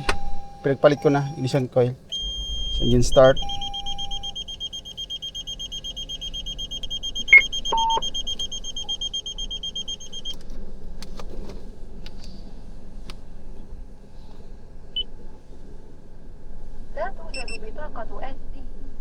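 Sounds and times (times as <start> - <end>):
short low beep: 0.0 - 10.4
car engine humming: 0.0 - 18.3
rapid electronic beeping: 2.1 - 10.4.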